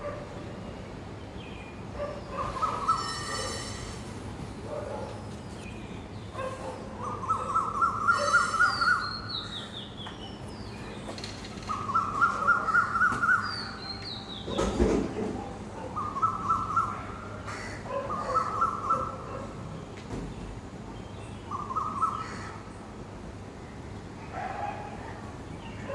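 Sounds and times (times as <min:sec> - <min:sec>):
thin high bird notes: 0:02.8 - 0:04.3.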